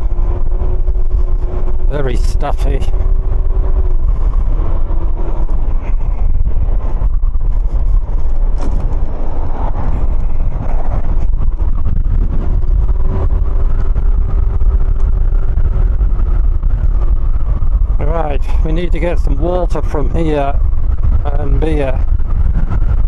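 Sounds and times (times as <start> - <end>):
wind rumbling on microphone: 0.0 - 23.0
scooter engine humming: 2.9 - 18.0.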